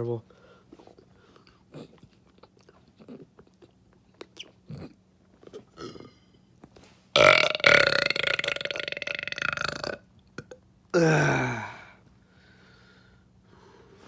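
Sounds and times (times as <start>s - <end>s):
loud long burp: 7.2s - 11.8s.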